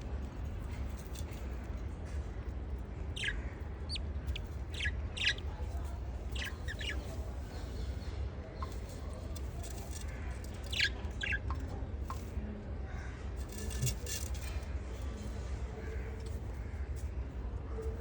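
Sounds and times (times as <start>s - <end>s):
steady low hum: 0.0s - 18.0s
lovebirds chirping: 2.9s - 12.2s.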